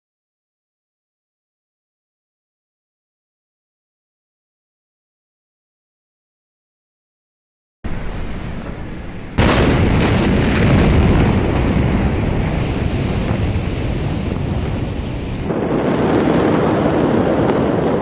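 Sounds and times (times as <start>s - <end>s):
loud rumbling noise: 7.8s - 18.0s
loud explosion blast: 9.3s - 18.0s.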